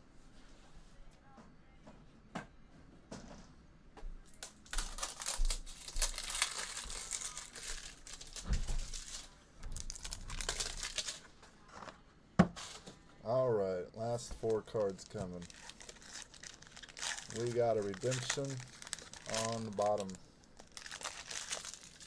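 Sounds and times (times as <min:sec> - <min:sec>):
foil wrapper tearing and crinkling: 0:04.4 - 0:11.2, 0:14.3 - 0:22.0.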